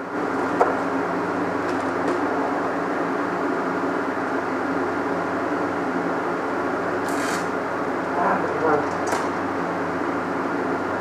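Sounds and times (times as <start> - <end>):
low machine hum: 0.0 - 11.0.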